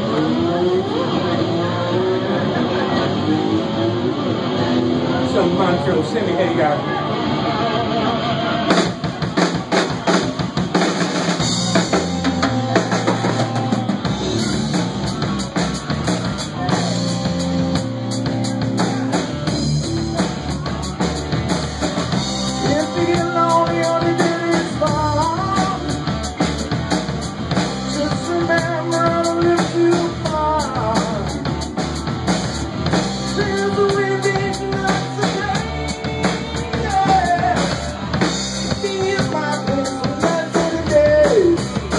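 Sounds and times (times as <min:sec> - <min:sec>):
live rock band playing: 0:00.0 - 0:41.9
drum kit beat: 0:08.7 - 0:41.9.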